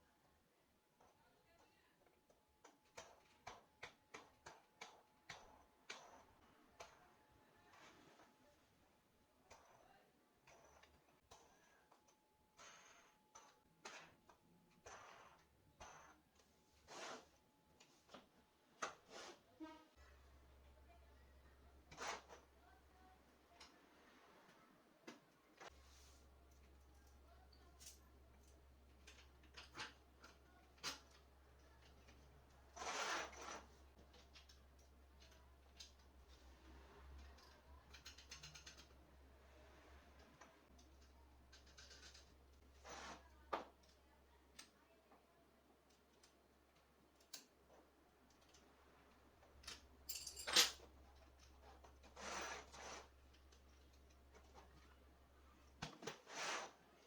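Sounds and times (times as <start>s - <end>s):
scraping rubs: 16.8s - 17.4s, 51.8s - 53.2s, 56.0s - 56.8s.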